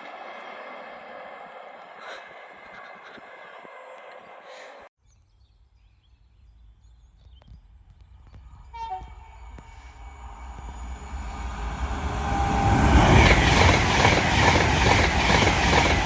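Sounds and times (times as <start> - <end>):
train rumble: 0.0 - 4.9, 7.7 - 16.0
train horn blast: 8.7 - 13.2.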